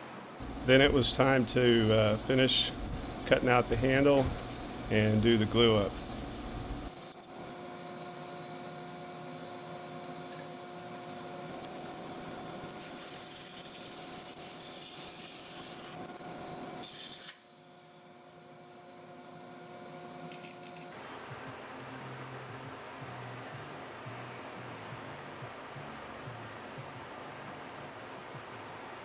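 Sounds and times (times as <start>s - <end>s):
power tool cutting wood: 0.4s - 16.1s, 16.7s - 17.6s.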